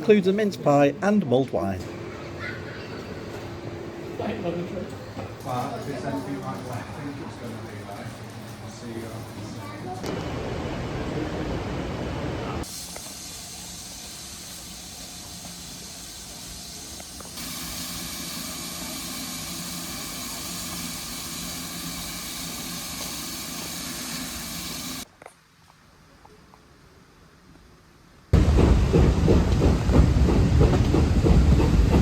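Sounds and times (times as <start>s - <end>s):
steam locomotive hissing steam: 12.5s - 25.0s.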